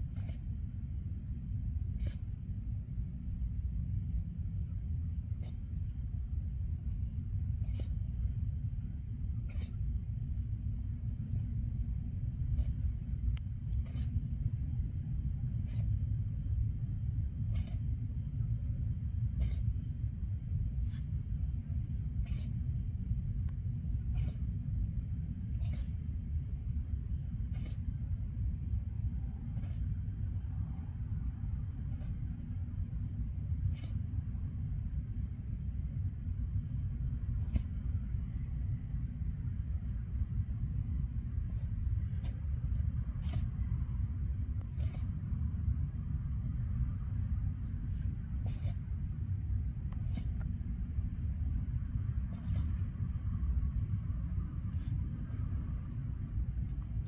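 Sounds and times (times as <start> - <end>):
possum sneezing: 0.1 - 0.5, 1.9 - 2.3, 5.4 - 5.7, 7.6 - 8.0, 9.4 - 9.8, 13.8 - 14.2, 15.6 - 15.9, 17.4 - 18.0, 19.2 - 19.8, 22.2 - 22.6, 24.0 - 24.6, 25.4 - 26.1, 27.4 - 28.0, 29.4 - 30.0, 31.8 - 32.3, 33.6 - 34.1, 37.4 - 37.8, 41.5 - 42.5, 43.2 - 43.6, 44.6 - 45.2, 48.3 - 48.9, 49.9 - 50.4, 52.2 - 52.9.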